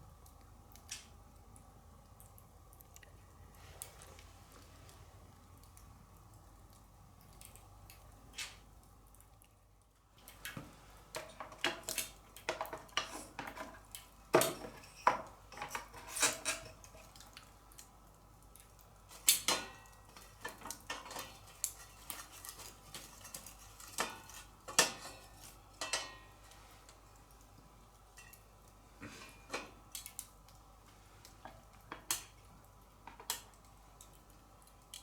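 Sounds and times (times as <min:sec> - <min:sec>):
dishes and utensils clinking: 0:19.4 - 0:26.4.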